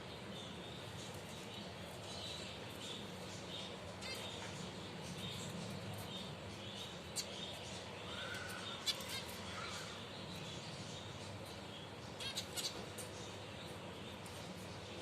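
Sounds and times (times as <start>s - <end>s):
finches chirping: 0.0s - 15.0s.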